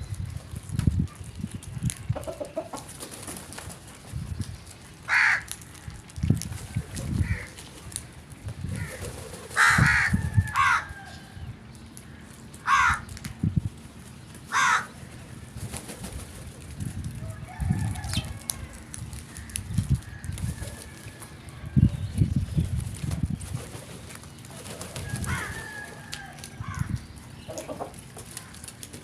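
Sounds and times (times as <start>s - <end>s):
crows cawing: 5.1s - 5.5s, 7.2s - 7.5s, 9.6s - 11.1s, 12.0s - 13.1s, 14.5s - 15.0s, 26.6s - 27.0s.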